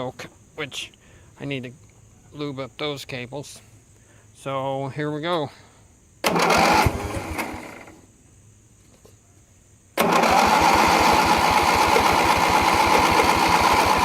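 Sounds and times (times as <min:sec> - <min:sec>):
starter cranking engine: 0:06.2 - 0:08.0, 0:10.0 - 0:14.0.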